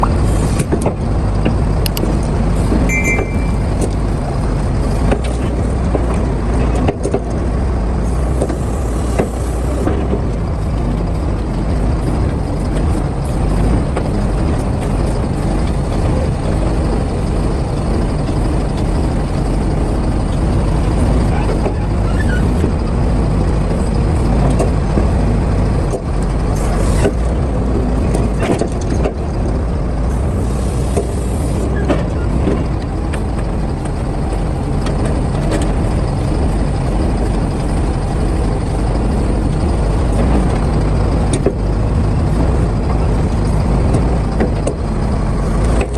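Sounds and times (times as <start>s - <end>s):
excavator diesel engine: 0.0s - 45.9s
short high beeps: 2.9s - 3.9s.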